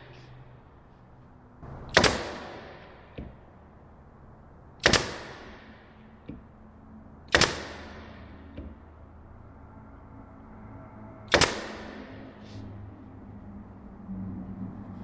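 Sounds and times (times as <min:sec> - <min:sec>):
nail gun firing: 0:01.7 - 0:03.4, 0:04.8 - 0:06.4, 0:07.3 - 0:08.7, 0:11.3 - 0:12.1.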